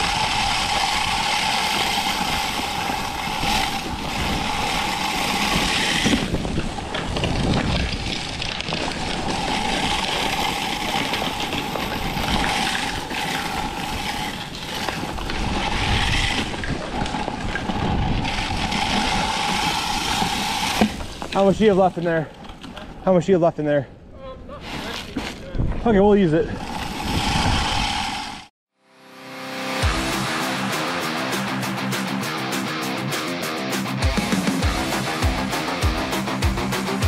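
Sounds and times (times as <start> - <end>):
salt spreader whining: 0.0 - 21.6, 29.4 - 37.0
wind buffeting microphone: 0.0 - 21.7, 25.4 - 28.5.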